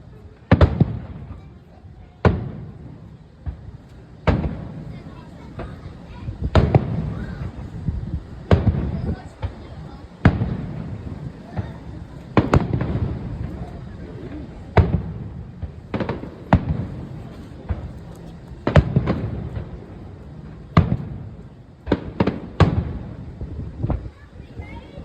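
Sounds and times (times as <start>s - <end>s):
fireworks bangs: 0.0s - 25.0s
echo of bangs: 2.2s - 5.0s, 8.5s - 13.7s, 14.7s - 20.0s, 20.7s - 23.2s.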